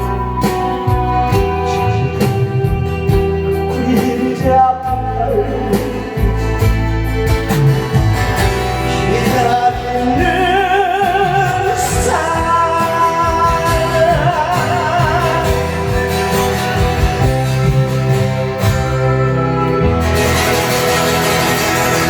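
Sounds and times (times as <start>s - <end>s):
person singing with vibrato: 0.0s - 7.2s, 8.7s - 17.7s
instrumental backing: 0.0s - 22.0s.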